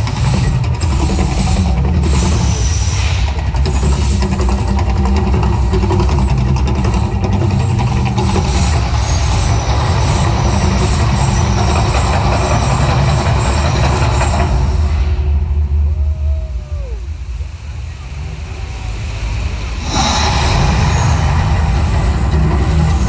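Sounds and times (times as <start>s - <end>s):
loud low rumble: 12.2s - 23.0s.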